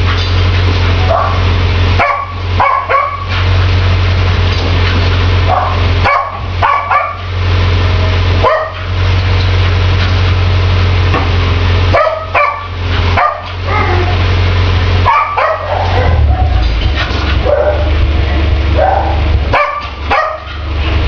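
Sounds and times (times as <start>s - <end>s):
steady hum and hiss: 0.0s - 21.0s
dog yipping and barking: 1.0s - 1.4s, 2.0s - 3.3s, 5.5s - 7.3s, 8.4s - 8.9s, 11.9s - 14.2s, 15.0s - 16.7s, 17.4s - 17.9s, 18.8s - 20.7s.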